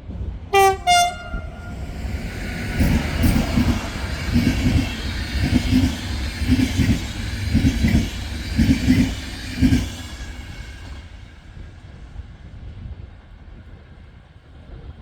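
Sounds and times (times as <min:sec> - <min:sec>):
train rolling noise: 0:00.0 - 0:15.0
train wheels clacking over rail joints: 0:02.3 - 0:11.1.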